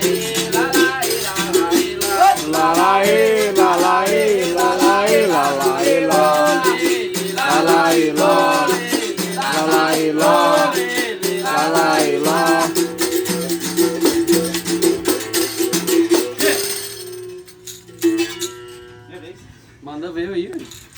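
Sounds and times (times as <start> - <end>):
person singing: 0.0 - 13.6
rattle shaking: 0.0 - 18.6, 20.6 - 20.9.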